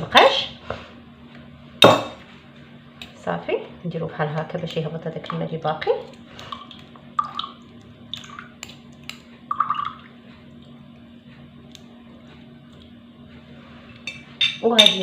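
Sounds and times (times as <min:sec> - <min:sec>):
faint steady hum: 0:00.0 - 0:15.0
liquid dripping through strainer: 0:06.4 - 0:08.8.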